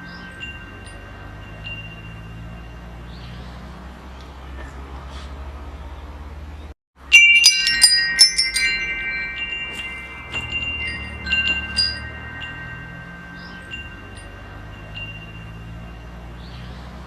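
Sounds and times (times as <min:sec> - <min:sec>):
wind chimes ringing: 0:00.0 - 0:04.0, 0:07.0 - 0:17.0.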